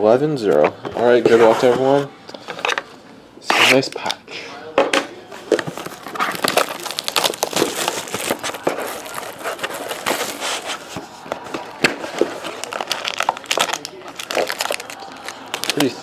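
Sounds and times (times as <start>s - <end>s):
wrapper tearing and crinkling: 5.6s - 11.0s, 12.0s - 16.0s.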